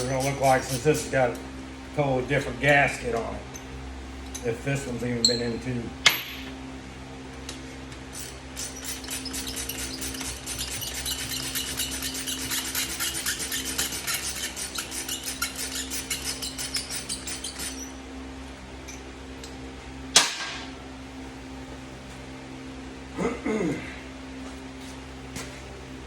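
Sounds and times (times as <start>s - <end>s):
steady low hum: 0.0s - 26.0s
ratchet wrench clicking rapidly: 8.1s - 17.9s.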